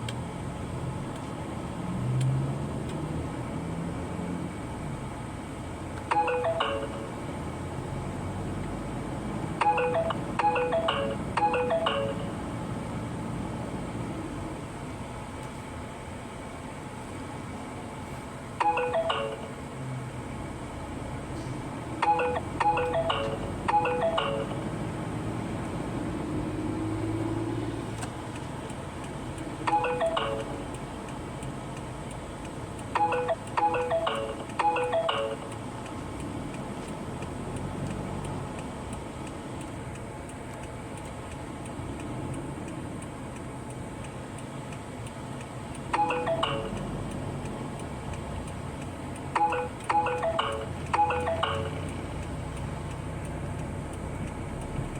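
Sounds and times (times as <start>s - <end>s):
electronic alert chime: 6.1s - 7.2s, 9.6s - 12.5s, 18.6s - 19.6s, 22.0s - 24.7s, 29.7s - 30.7s, 33.0s - 35.5s, 46.0s - 46.8s, 49.4s - 51.9s.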